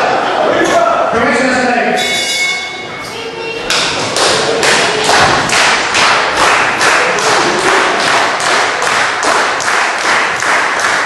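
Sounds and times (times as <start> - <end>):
crowd clapping in unison: 3.7 - 11.0.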